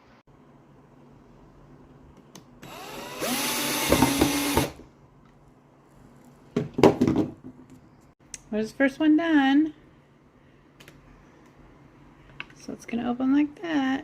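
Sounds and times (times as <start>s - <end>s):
power drill whining: 2.6s - 4.8s.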